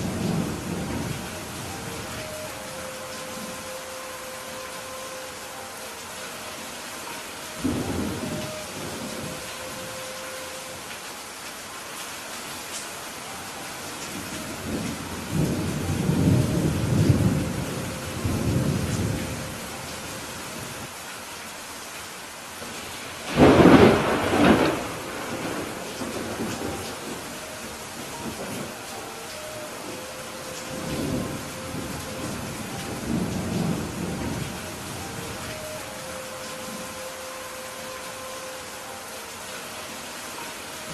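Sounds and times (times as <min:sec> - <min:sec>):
thunder rumbling: 0:00.0 - 0:03.8, 0:07.6 - 0:10.0, 0:14.4 - 0:19.8, 0:23.2 - 0:35.8
heavy rain: 0:00.0 - 0:40.9.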